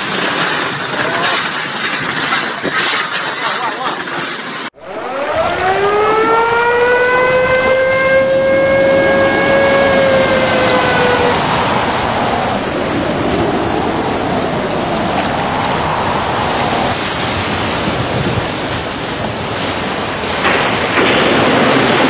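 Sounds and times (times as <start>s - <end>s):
storm wind rushing: 4.0s - 22.0s
whistling wind tone: 4.4s - 21.0s
faint wind howl: 4.7s - 22.0s.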